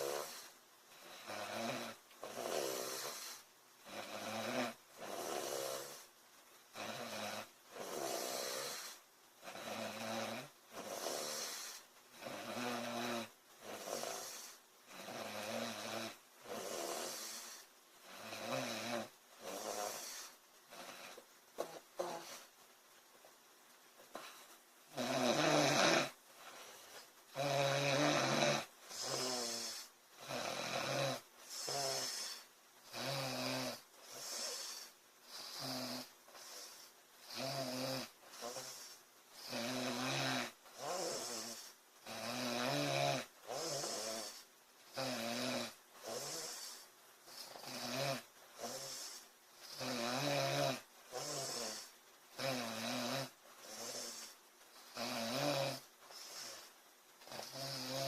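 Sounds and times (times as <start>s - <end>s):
woman snoring: 0.0s - 6.1s, 6.7s - 22.5s, 24.1s - 58.0s.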